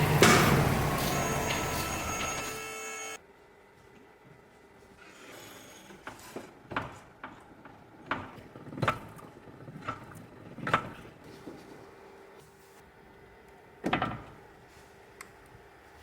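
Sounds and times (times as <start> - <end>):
hand tools and metal parts clinking: 0.0 - 3.2.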